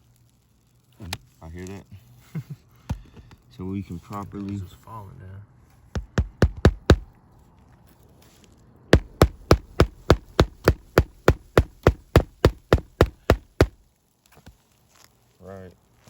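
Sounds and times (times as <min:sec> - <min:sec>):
hammer striking shingle roof: 0:06.0 - 0:07.1, 0:09.0 - 0:13.8.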